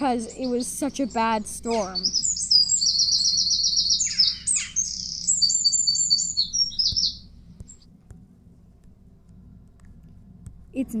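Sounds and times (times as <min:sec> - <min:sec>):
small bird chirping: 0:00.0 - 0:07.9.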